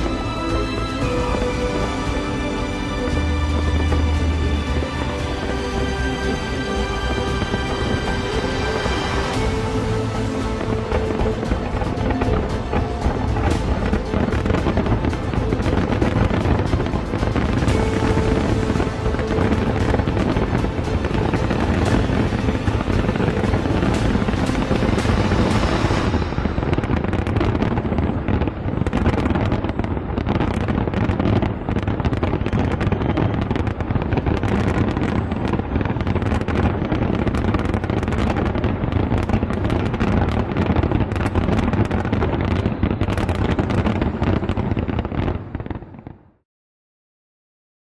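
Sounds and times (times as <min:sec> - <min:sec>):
fireworks bangs and crackles: 0:00.0 - 0:46.4.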